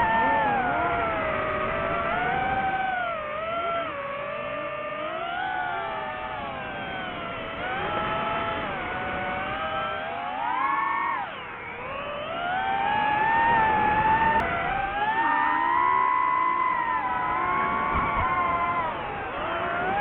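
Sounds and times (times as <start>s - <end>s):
electric motor whining: 0.0s - 20.0s.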